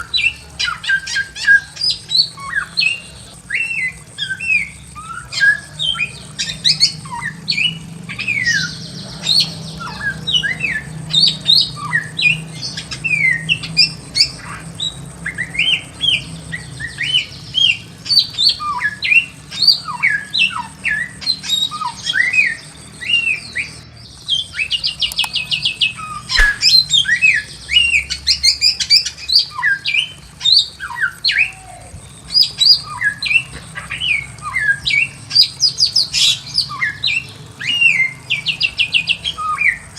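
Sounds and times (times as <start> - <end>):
sharp click: 25.0 - 25.4, 26.4 - 26.8
bird rattling trills: 26.4 - 26.9
bird whistling: 26.4 - 27.0.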